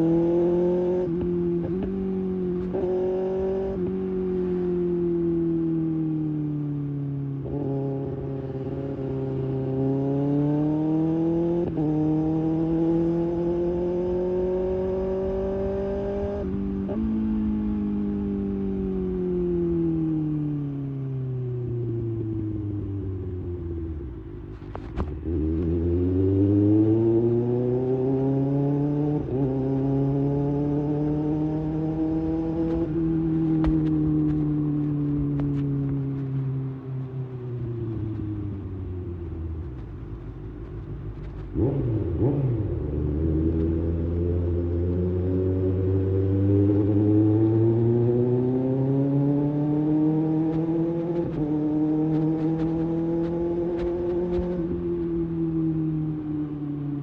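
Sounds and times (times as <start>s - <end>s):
motorcycle engine revving: 0.0s - 6.2s, 7.0s - 23.9s, 24.6s - 39.9s, 40.9s - 57.0s.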